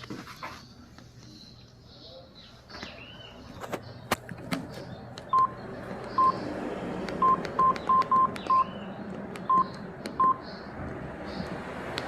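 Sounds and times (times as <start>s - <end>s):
phone keypad beeps: 5.3s - 5.6s, 6.2s - 6.4s, 7.2s - 8.7s, 9.5s - 10.4s.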